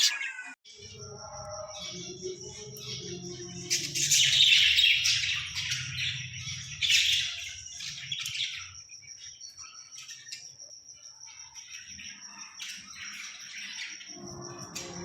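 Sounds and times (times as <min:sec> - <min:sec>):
parrot squawking and chirping: 0:00.0 - 0:00.6.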